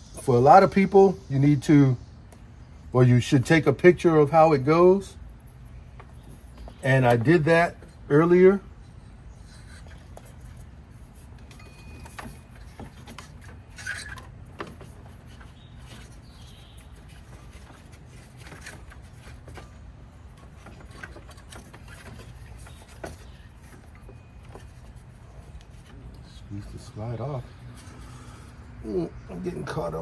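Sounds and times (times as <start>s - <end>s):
rubber belt rubbing and scraping: 8.9s - 28.6s.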